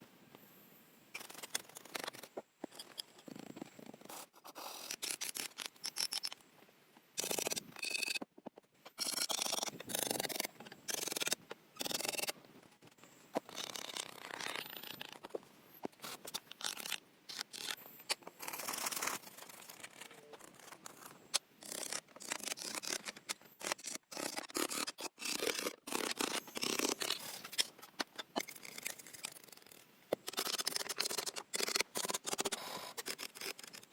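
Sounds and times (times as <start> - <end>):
snipping: 1.1 - 6.4, 7.2 - 12.4, 13.4 - 33.9
scraping and rubbing: 7.2 - 33.9.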